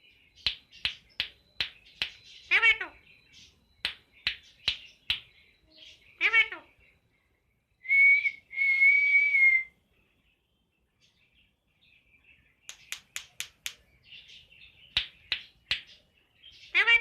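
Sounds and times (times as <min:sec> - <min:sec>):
whistled notes: 0:07.8 - 0:09.7
sharp clicks: 0:12.7 - 0:13.9.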